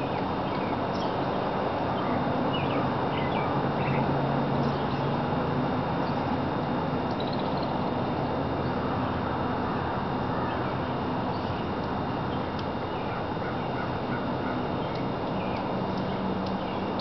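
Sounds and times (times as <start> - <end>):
steady rushing roar: 0.0 - 17.0.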